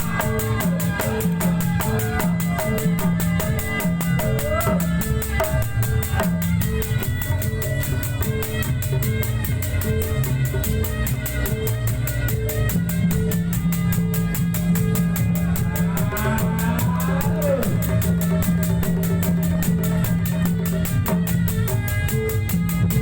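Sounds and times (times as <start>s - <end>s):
fast dance music with drum beat: 0.0s - 23.0s.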